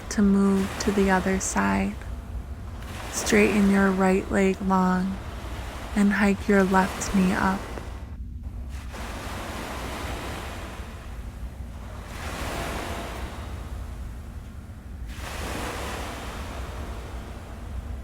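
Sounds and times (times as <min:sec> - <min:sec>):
ocean waves surging and hissing: 0:00.0 - 0:18.0
steady low rumble: 0:00.0 - 0:18.0.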